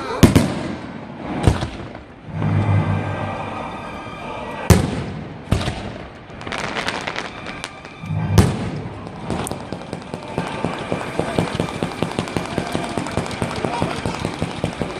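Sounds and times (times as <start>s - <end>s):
fireworks bangs: 0.0s - 2.8s, 4.7s - 14.9s
fireworks pops and crackle: 4.8s - 14.9s.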